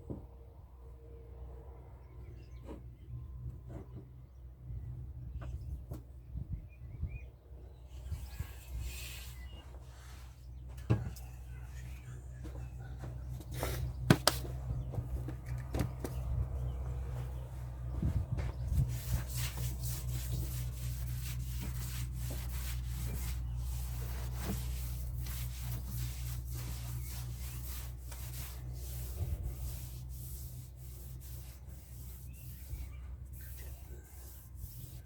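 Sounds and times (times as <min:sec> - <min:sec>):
steady low hum: 0:00.0 - 0:35.0
hand sanding rasping strokes: 0:17.1 - 0:35.0.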